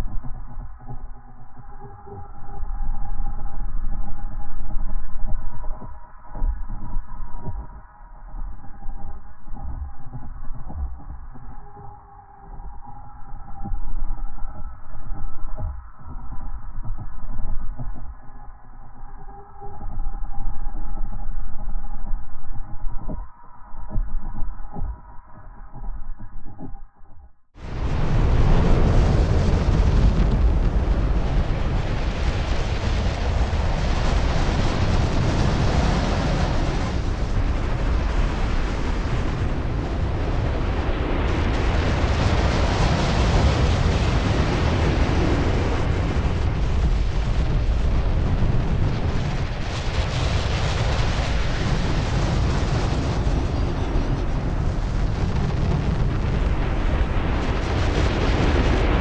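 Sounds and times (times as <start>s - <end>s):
rumbling crackling roar: 27.6s - 59.0s.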